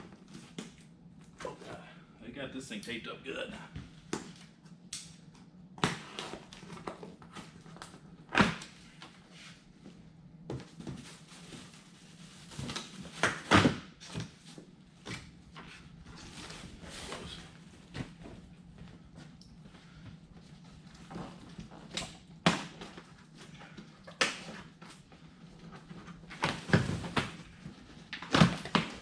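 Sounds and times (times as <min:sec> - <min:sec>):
faint steady hum: 0:00.0 - 0:29.0.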